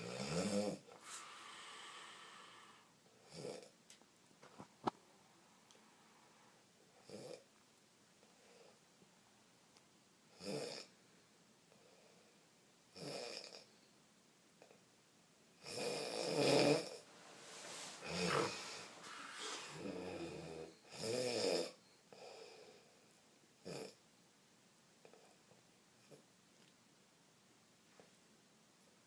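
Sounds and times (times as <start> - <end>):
man snoring heavily: 15.7 - 17.0, 18.0 - 21.8.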